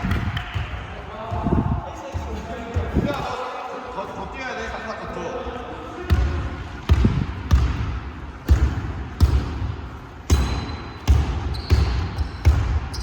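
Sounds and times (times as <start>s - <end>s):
basketball bouncing on gym floor: 6.1s - 13.0s.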